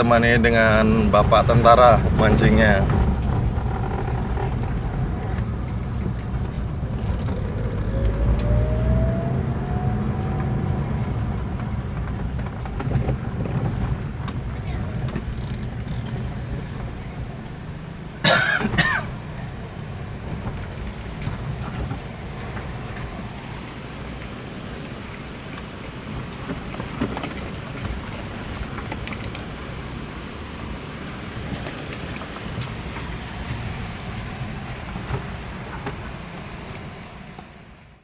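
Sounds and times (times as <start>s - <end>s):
vehicle engine running: 0.0s - 37.0s
road rumble: 0.0s - 38.0s.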